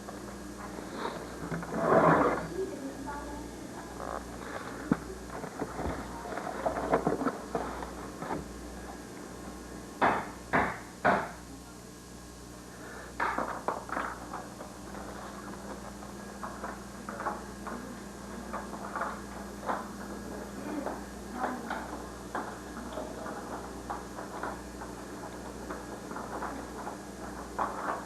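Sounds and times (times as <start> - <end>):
loud knocks: 10.0 - 11.4.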